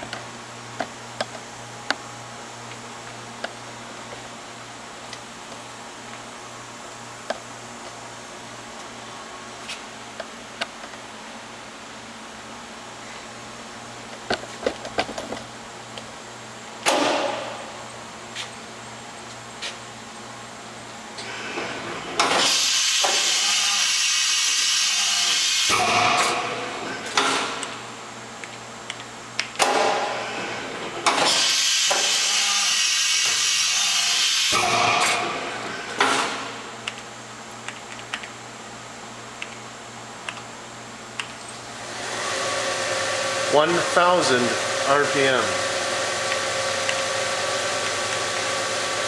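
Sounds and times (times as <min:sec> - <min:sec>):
steady machine hum: 0:41.0 - 0:49.0.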